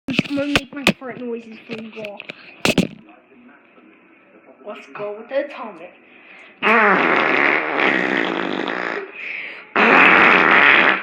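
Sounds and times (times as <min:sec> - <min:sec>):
person making fake fart noises: 0:06.6 - 0:11.0.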